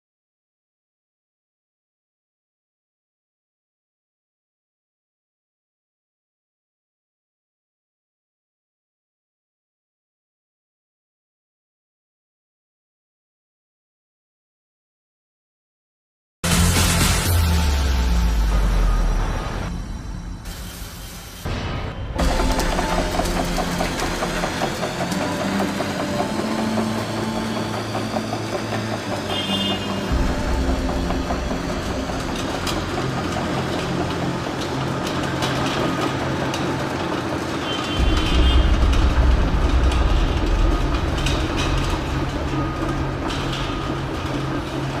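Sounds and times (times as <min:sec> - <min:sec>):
heavy machinery working: 0:16.4 - 0:45.0
deep rumble: 0:38.0 - 0:44.7.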